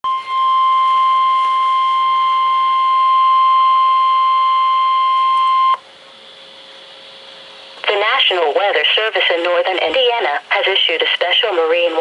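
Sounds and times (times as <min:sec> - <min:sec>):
electronic warning alarm tone: 0:00.1 - 0:05.8.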